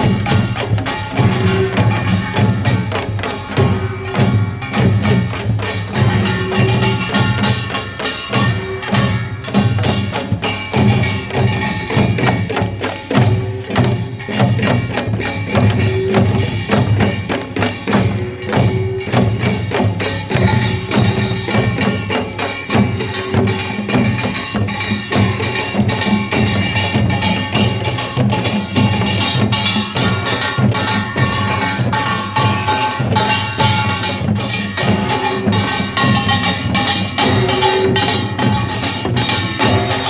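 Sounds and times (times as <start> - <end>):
hand gongs and drums playing: 0.0 - 40.0.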